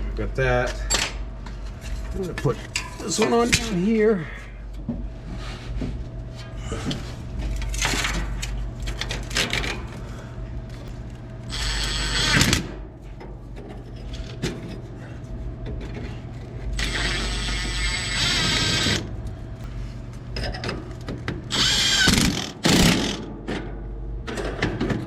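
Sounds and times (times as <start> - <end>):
steady low hum: 0.0 - 25.0
power tool whine: 11.5 - 12.6, 16.8 - 19.1, 21.5 - 23.2.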